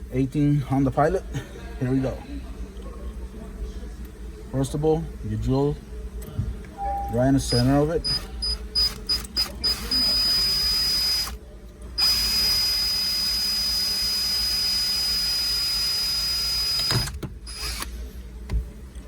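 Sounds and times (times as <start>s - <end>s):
power drill whine: 6.8s - 11.4s, 12.0s - 17.9s.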